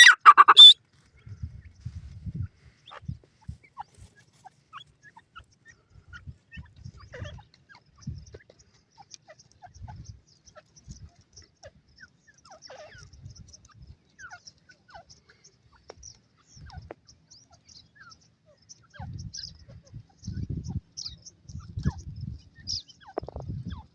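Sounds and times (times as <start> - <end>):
bird chirps: 0.0 - 0.8.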